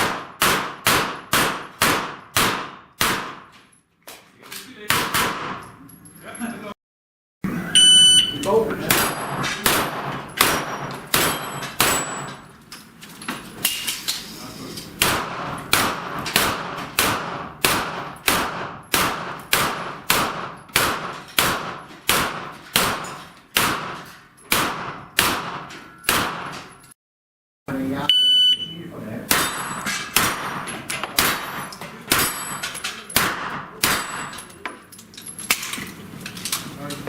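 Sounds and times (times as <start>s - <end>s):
rapid gunshots on steel plates: 0.0s - 3.6s, 4.9s - 5.6s, 8.8s - 12.5s, 15.0s - 26.9s, 29.3s - 34.5s
shot timer beep: 7.7s - 8.5s, 28.1s - 28.8s.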